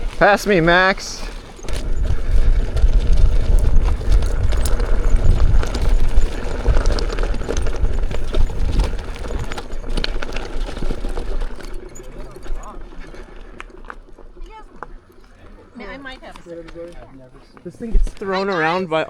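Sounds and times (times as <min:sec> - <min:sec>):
wind rumble on microphone: 0:00.0 - 0:15.2
tyre clattering over rocks: 0:00.0 - 0:17.3.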